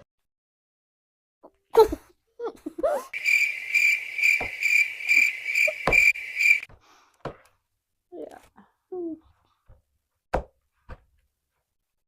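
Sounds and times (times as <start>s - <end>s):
cricket chirping: 3.2s - 6.7s
sharp knocks: 5.8s - 6.1s.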